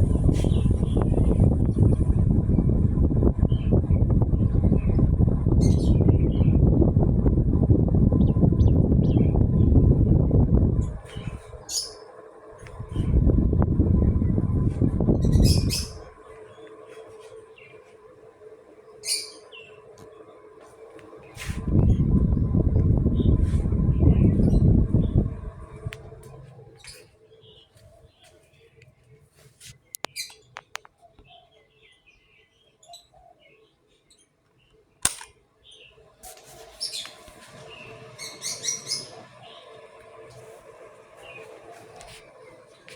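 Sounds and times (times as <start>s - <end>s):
air rumble on microphone: 0.0s - 11.9s, 12.5s - 17.7s, 20.7s - 26.9s
ceiling fan humming: 0.0s - 30.2s, 35.0s - 42.9s
birds chirping: 3.4s - 6.8s, 8.1s - 13.4s, 14.0s - 35.0s, 35.6s - 42.9s
sharp click: 35.0s - 35.4s.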